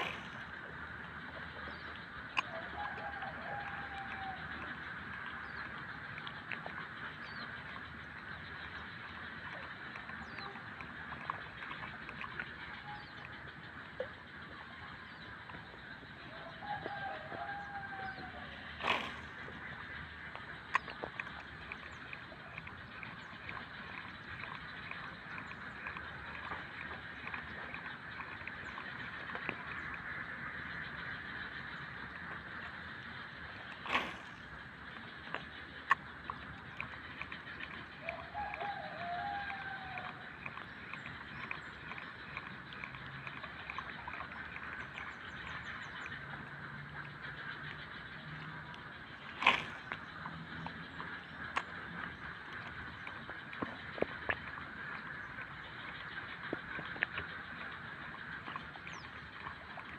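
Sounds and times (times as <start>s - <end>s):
insects and frogs chirping: 0.0s - 59.9s
fowl calling: 2.3s - 5.3s, 16.2s - 19.9s, 38.0s - 40.4s.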